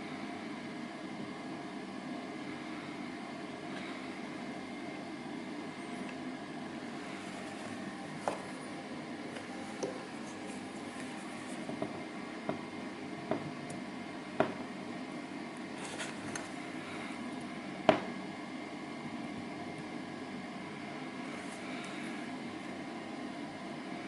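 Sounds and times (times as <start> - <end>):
steady background hum: 0.0 - 24.0.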